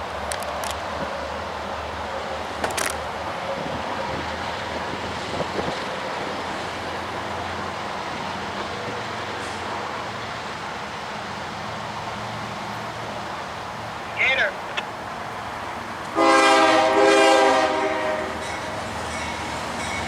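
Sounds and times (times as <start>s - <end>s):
train wheels rumbling on rail: 0.0s - 20.0s
short clicks: 2.6s - 3.0s.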